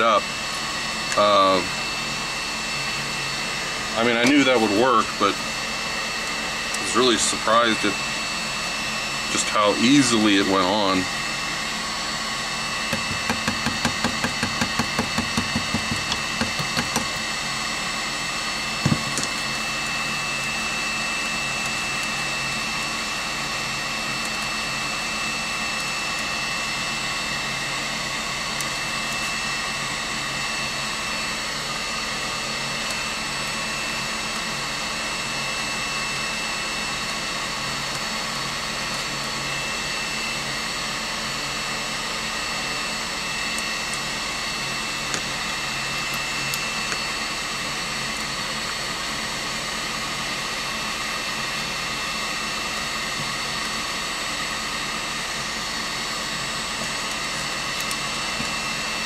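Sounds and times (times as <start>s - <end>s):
electric motor whirring: 0.5s - 59.0s.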